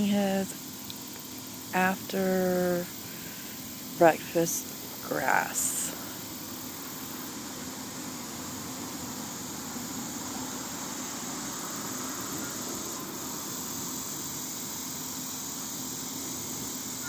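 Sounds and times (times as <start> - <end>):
background hum and hiss: 0.0 - 17.0.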